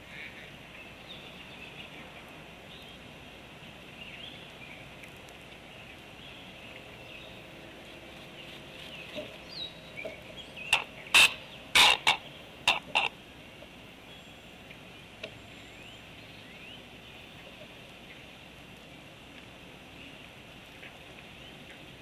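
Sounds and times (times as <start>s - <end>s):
bird clacking its bill: 10.0s - 13.1s.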